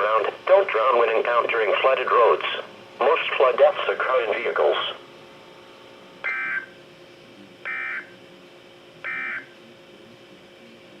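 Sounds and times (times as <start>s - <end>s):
faint hum: 0.0s - 11.0s
buzzing digital data tones: 6.2s - 6.7s, 7.7s - 8.2s, 9.0s - 9.5s.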